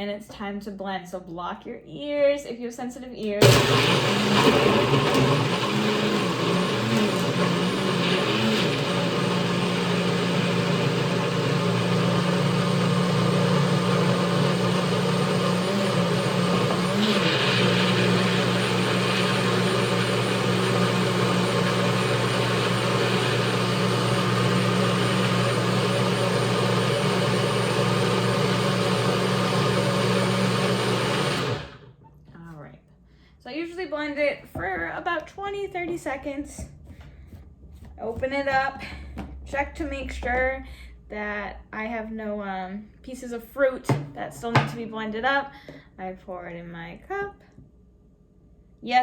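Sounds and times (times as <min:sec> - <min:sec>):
blender running: 0:03.4 - 0:32.0.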